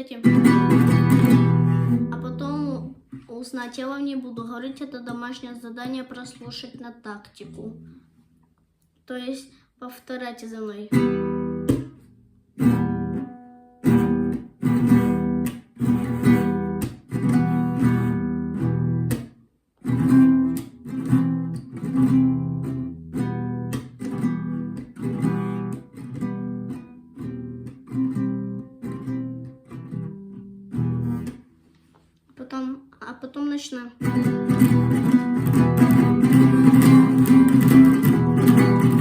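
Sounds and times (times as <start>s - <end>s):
acoustic guitar strumming: 0.1s - 3.2s, 10.9s - 31.7s, 34.0s - 39.0s.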